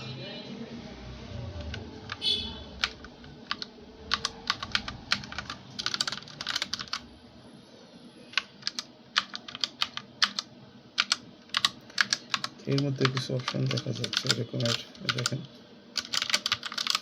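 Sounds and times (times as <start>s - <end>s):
mechanical keyboard keys clacking: 2.8s - 7.0s, 8.4s - 15.4s, 16.0s - 17.0s.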